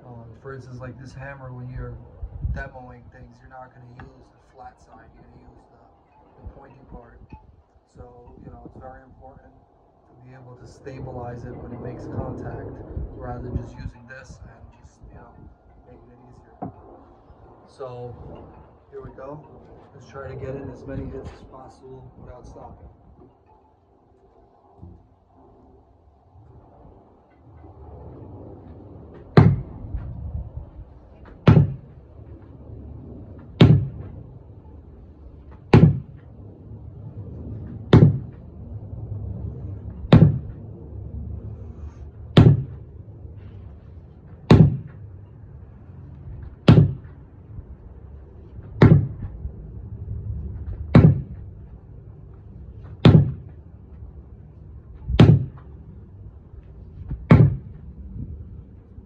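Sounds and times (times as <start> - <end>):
sledgehammer thudding on tire: 29.4 - 29.7, 31.2 - 31.9, 33.6 - 34.1, 35.7 - 36.2, 37.9 - 38.4, 40.1 - 40.6, 42.4 - 42.8, 44.5 - 45.0, 46.6 - 47.1, 48.8 - 49.3, 50.9 - 51.4, 52.9 - 53.5, 55.1 - 55.6, 57.1 - 57.8.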